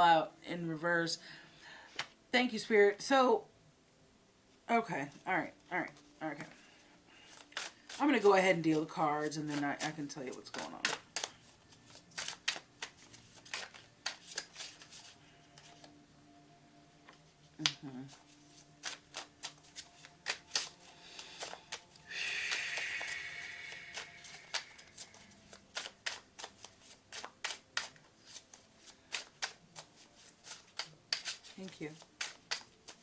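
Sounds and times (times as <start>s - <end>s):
cards rustling: 5.9s - 16.0s, 17.1s - 33.0s
cards snapping: 7.2s - 15.9s, 17.6s - 33.0s.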